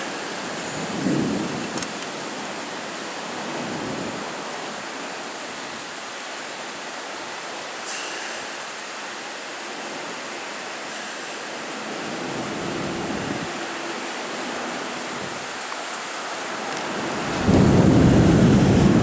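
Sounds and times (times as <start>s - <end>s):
steady rushing noise: 11.4s - 19.0s.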